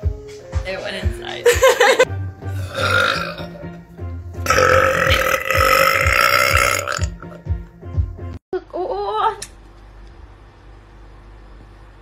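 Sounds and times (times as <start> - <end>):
background music with steady beat: 0.0 - 8.4
woman burping: 2.5 - 3.6, 4.5 - 7.4.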